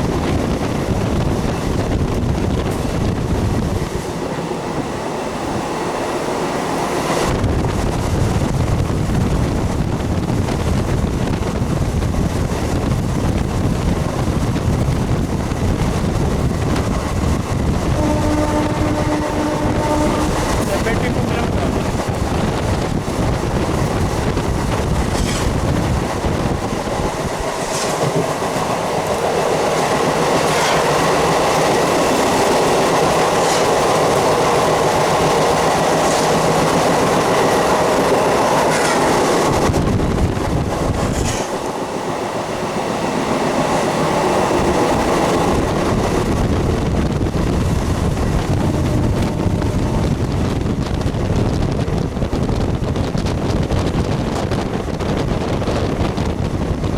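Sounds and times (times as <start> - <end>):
electric train rumbling: 0.0 - 56.9
wheels clicking over rail joints: 20.4 - 41.8.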